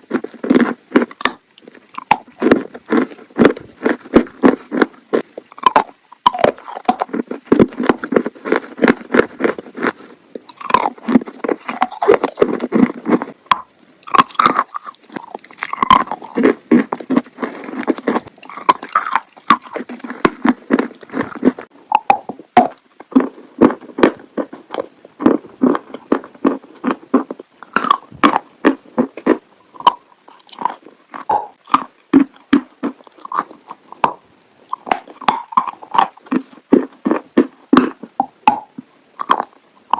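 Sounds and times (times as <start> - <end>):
chewing chalk crunches: 0.0 - 39.9.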